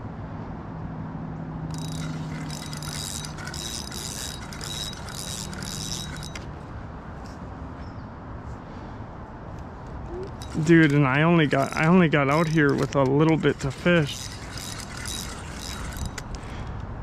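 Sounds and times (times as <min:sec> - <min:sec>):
fishing reel clicking and whirring: 0:01.7 - 0:06.6, 0:10.3 - 0:16.9.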